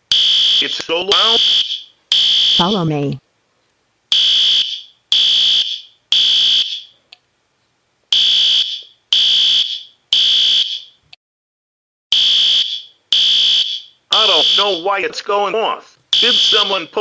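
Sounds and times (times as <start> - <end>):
fire alarm beeps: 0.1 - 2.8, 4.1 - 7.0, 8.1 - 11.0, 12.1 - 14.8, 16.1 - 16.9.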